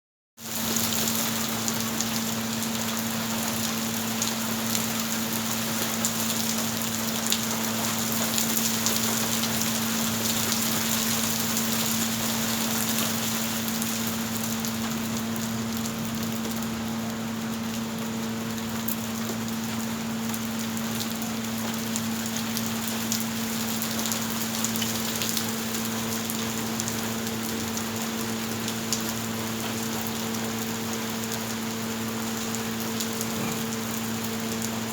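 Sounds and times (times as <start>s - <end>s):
rain drops ticking on a surface: 0.4s - 34.9s.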